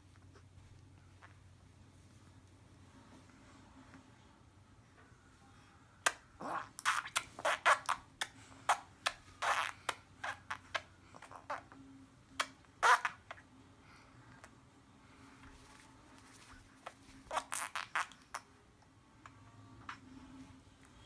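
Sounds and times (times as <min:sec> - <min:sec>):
person making mouth noises: 0:06.0 - 0:11.7, 0:17.3 - 0:18.5.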